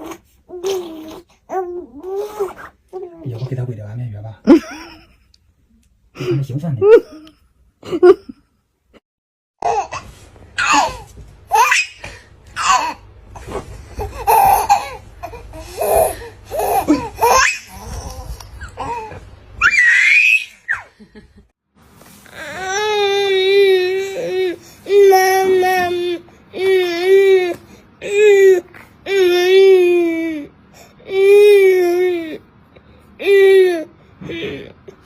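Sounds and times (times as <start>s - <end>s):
baby laughing and squealing: 9.6s - 12.0s, 14.0s - 20.9s
baby wailing: 14.0s - 20.8s, 22.3s - 32.4s.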